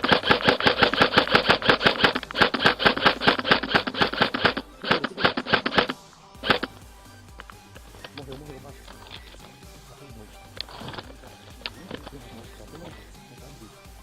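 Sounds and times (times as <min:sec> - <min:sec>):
airsoft gun firing full auto: 0:00.0 - 0:06.8.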